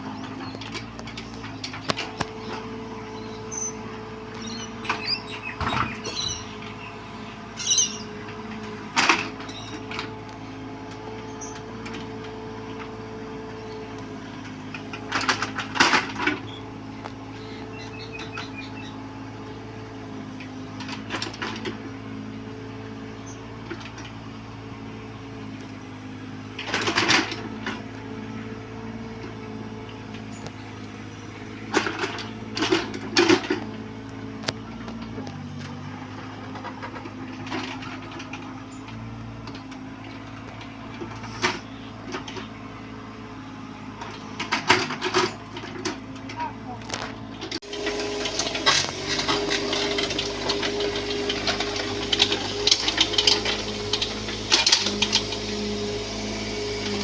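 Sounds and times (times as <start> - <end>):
mini excavator running: 0.0 - 57.0.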